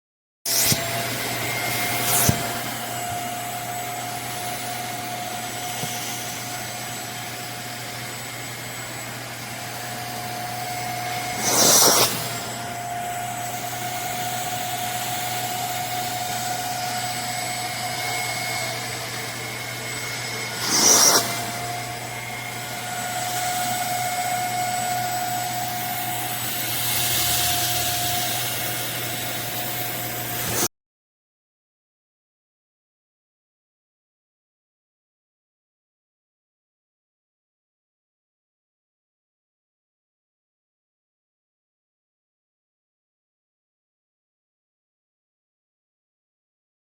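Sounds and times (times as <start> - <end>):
shop vacuum running: 0.5 - 30.7.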